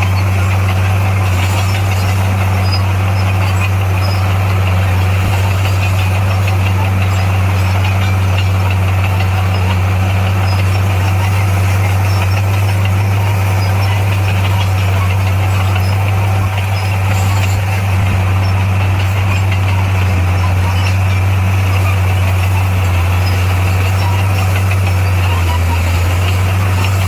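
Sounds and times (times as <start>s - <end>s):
diesel engine droning: 0.0s - 27.0s.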